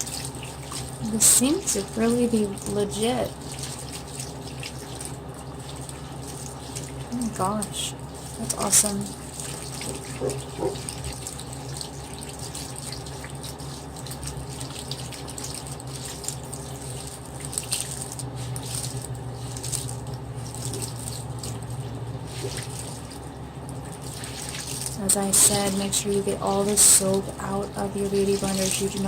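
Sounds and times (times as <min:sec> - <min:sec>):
sponges rubbed on soap: 0:00.0 - 0:29.0
tap water running into sink: 0:00.0 - 0:29.0.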